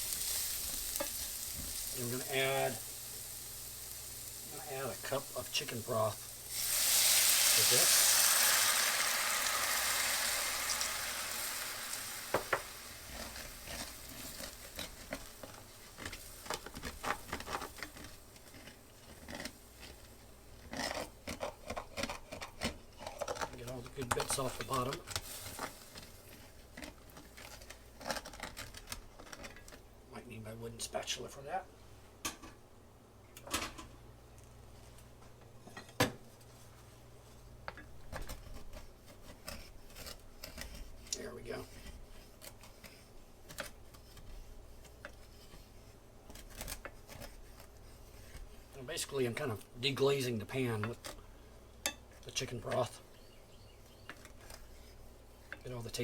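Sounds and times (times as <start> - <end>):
broth sizzling in a skillet: 0.0 - 19.0, 24.2 - 26.5
utensil scraping pan bottom: 0.0 - 29.6.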